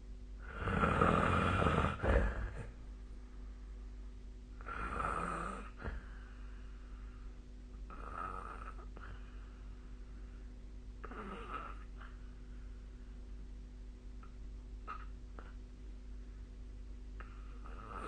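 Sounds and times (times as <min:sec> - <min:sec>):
steady low hum: 0:00.0 - 0:18.0
person snoring: 0:00.4 - 0:02.8, 0:04.6 - 0:06.2, 0:07.9 - 0:09.2, 0:11.0 - 0:12.1, 0:17.2 - 0:18.0.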